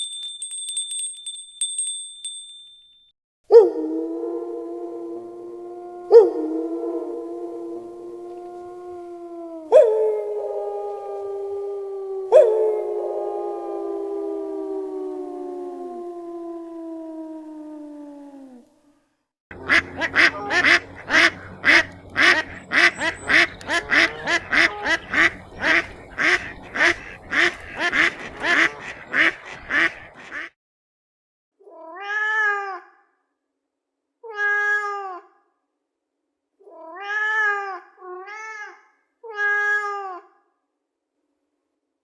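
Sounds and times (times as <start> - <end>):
falling howl: 3.5 - 18.7
cat meowing: 31.7 - 32.9, 36.6 - 40.2.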